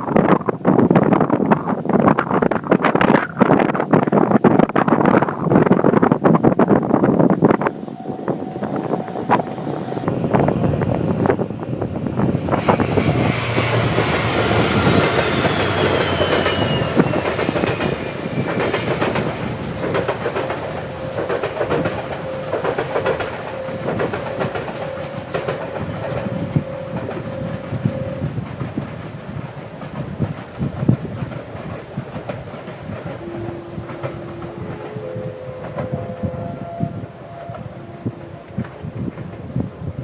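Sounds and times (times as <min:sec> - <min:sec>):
diesel train passing: 0:06.5 - 0:40.0
falling whine: 0:07.2 - 0:29.7
train wheels clacking over rail joints: 0:10.0 - 0:36.1.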